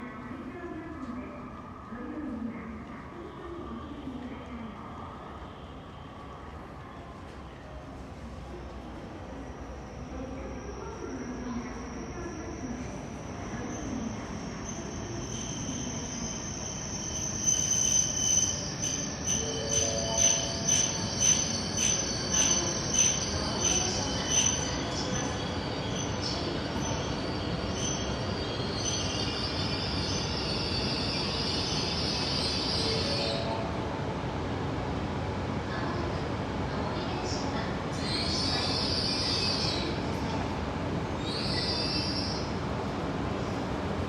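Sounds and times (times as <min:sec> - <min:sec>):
train wheel squeal: 0:09.3 - 0:33.6, 0:37.9 - 0:40.0, 0:41.2 - 0:42.6.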